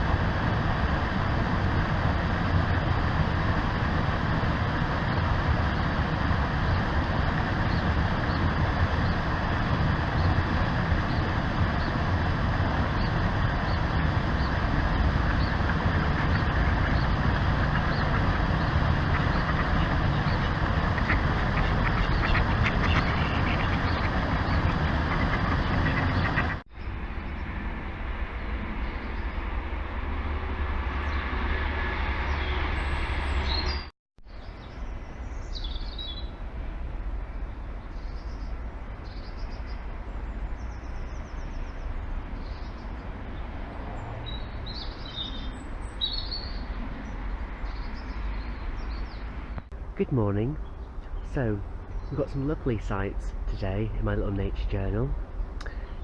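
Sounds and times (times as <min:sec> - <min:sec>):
rushing background noise: 0:00.0 - 0:56.0
ducks quacking: 0:14.4 - 0:26.6.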